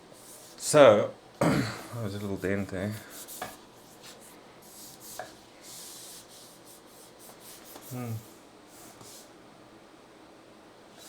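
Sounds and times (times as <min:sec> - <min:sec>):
short voice hum: 0:07.8 - 0:08.4.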